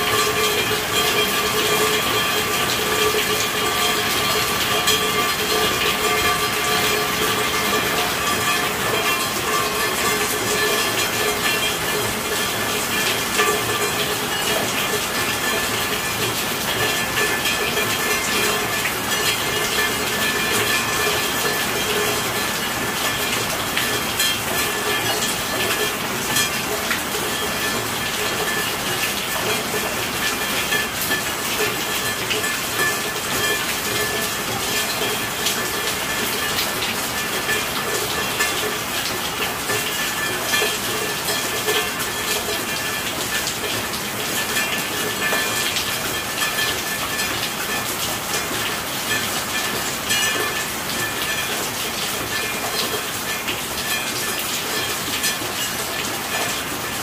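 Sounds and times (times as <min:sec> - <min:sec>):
steady rainfall: 0:00.0 - 0:57.0.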